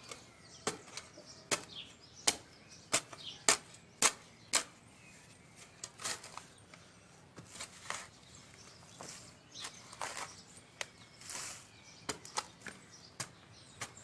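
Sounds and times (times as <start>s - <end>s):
axe chopping wood: 1.5s - 4.7s
rustling: 7.4s - 10.4s.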